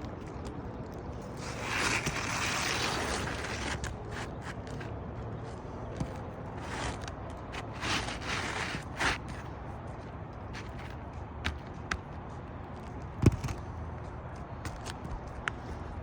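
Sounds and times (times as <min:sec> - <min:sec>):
roof shingles scraping and creaking: 0:00.0 - 0:09.7, 0:10.4 - 0:12.0.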